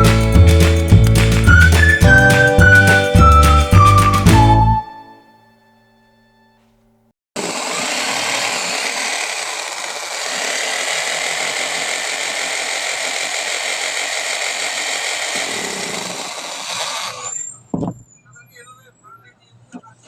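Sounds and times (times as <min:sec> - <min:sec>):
demolition hammer running: 0:07.4 - 0:17.3.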